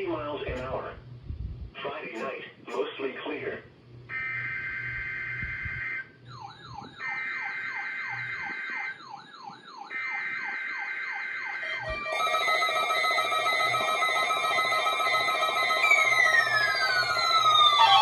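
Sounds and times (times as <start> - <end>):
steady alarm tone: 4.1 - 18.0
warbling alert alarm sweeps: 4.1 - 18.0.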